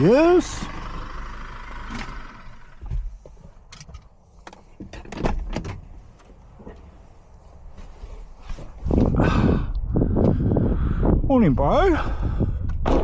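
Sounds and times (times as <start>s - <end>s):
vehicle engine rumble: 0.0s - 13.0s
knocks and clunks: 1.8s - 7.0s, 12.7s - 13.0s.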